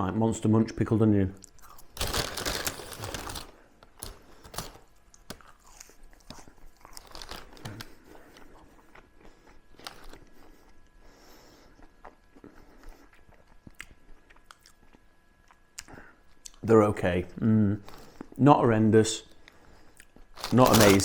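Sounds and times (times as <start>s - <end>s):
person chewing crunchy food: 1.4s - 2.2s, 5.1s - 10.9s, 11.6s - 16.6s.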